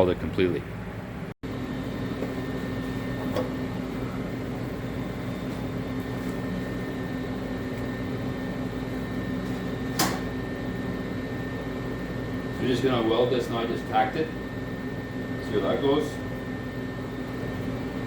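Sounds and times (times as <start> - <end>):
fan motor hum: 0.0 - 18.0.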